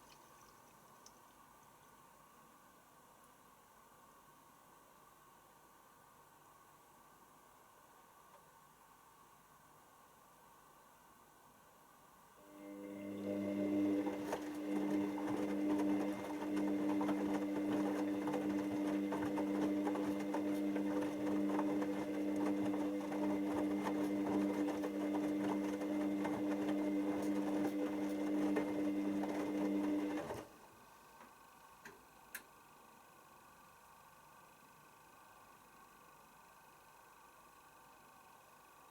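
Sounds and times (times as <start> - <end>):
washing machine humming and rattling: 12.5 - 30.7.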